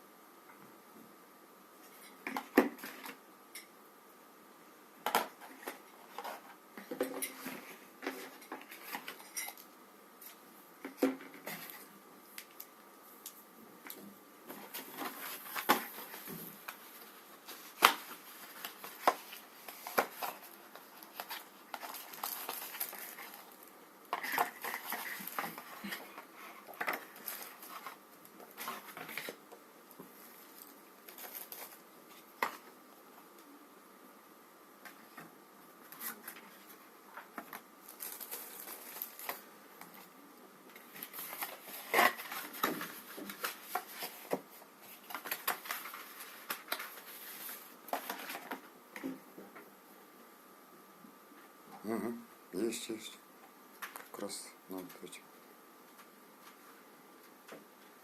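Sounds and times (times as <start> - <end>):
hands handling a box: 14.5 - 29.4, 40.7 - 48.6
packaging crinkling: 17.4 - 26.0, 37.8 - 39.4.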